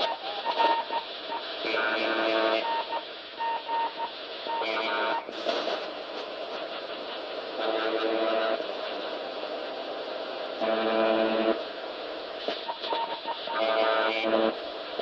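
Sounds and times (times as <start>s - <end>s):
radio buzzes: 0.0s - 9.9s, 10.5s - 15.0s
radio static hiss: 0.0s - 15.0s
morse code beeps: 0.1s - 5.2s.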